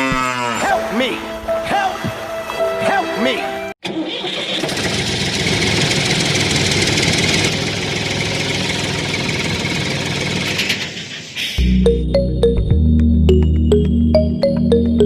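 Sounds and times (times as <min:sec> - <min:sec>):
background music: 0:00.4 - 0:03.8, 0:11.6 - 0:15.0
small engine running: 0:04.4 - 0:11.0.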